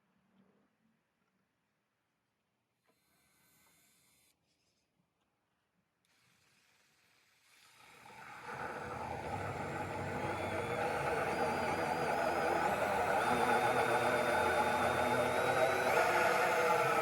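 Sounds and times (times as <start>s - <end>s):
power drill humming and whining: 6.1s - 17.0s.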